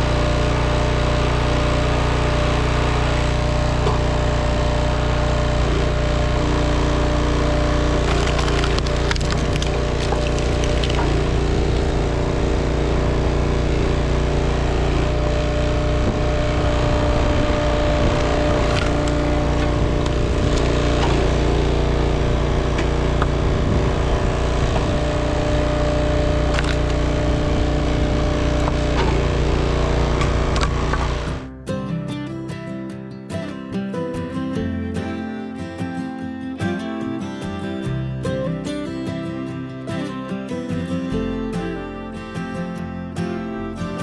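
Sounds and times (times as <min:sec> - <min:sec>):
log splitter engine running: 0:00.0 - 0:44.0
wood splitting cracks: 0:07.9 - 0:12.0, 0:18.6 - 0:21.2, 0:26.4 - 0:27.0.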